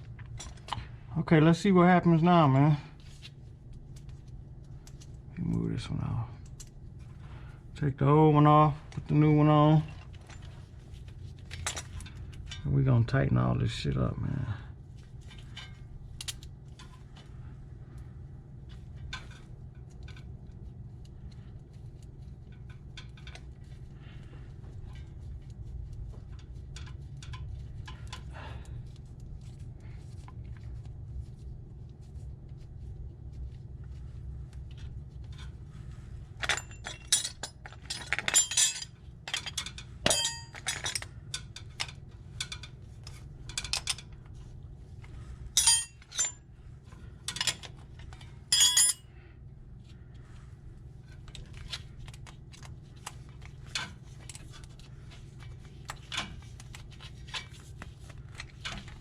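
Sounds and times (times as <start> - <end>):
steady low hum: 0.0 - 59.0
hand tool clinking on metal: 36.4 - 42.7, 45.6 - 46.4, 48.5 - 49.1.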